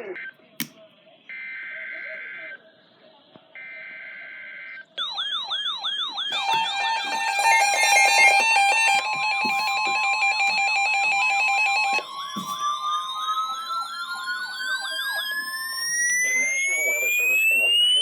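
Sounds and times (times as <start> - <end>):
fast yelp siren: 5.0 - 18.0
wail siren rising: 5.0 - 18.0
stepping electronic beeping: 6.3 - 18.0.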